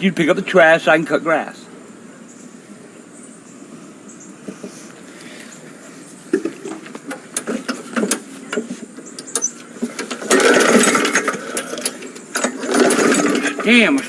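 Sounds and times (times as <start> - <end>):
lawn mower pull cord start: 6.4 - 14.0.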